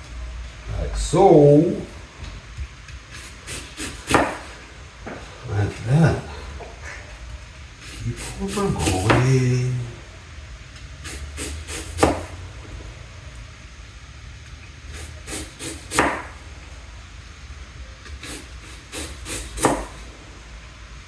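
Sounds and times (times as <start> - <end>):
knife slicing apple on cutting board: 3.2 - 4.6, 11.1 - 12.4, 15.0 - 16.4, 18.2 - 20.0.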